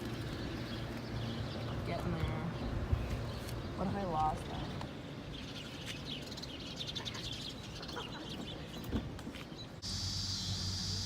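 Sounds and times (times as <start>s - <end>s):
birds chirping: 0.0s - 11.0s
outdoor background noise: 0.0s - 11.0s
high-pitched buzz: 9.8s - 11.0s.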